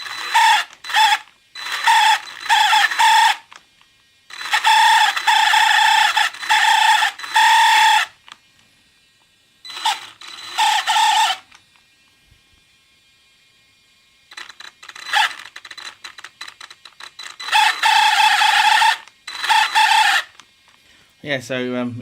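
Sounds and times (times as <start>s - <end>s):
toy truck high squeal: 0.0s - 3.6s, 4.3s - 8.2s, 9.7s - 11.6s, 14.3s - 20.4s.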